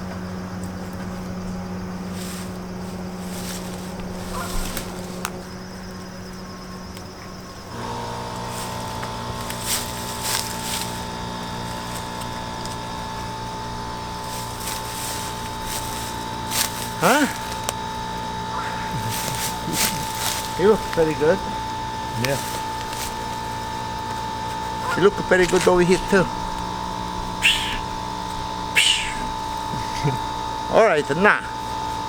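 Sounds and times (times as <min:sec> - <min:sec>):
high steady whine: 0:00.0 - 0:32.0
motor humming: 0:00.0 - 0:32.0.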